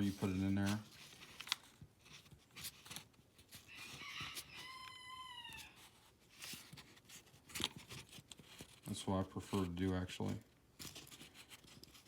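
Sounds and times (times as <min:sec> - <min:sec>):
faint animal cry: 0:03.7 - 0:05.9.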